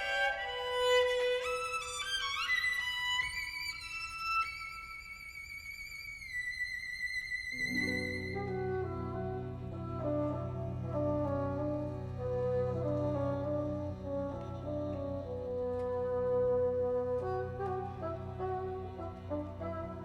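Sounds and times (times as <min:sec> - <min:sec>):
solo violin: 0:00.0 - 0:20.0
lower sustained orchestral instruments: 0:07.5 - 0:20.0.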